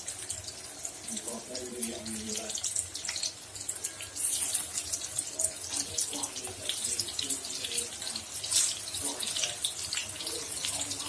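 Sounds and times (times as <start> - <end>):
patties sizzling in hot oil: 0.0 - 11.0.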